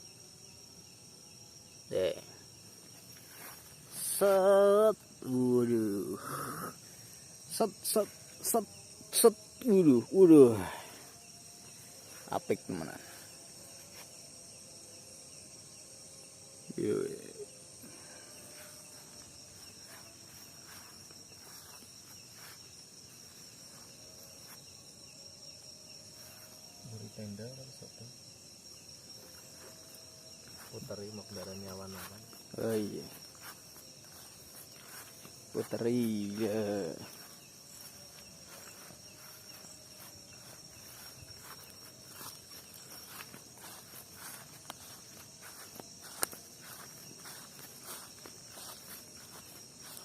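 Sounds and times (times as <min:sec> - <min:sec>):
high-pitched insect drone: 0:00.0 - 0:50.0
short insect chirps: 0:00.0 - 0:50.0
faint footsteps on ground: 0:02.8 - 0:05.2, 0:18.1 - 0:24.8, 0:29.1 - 0:50.0.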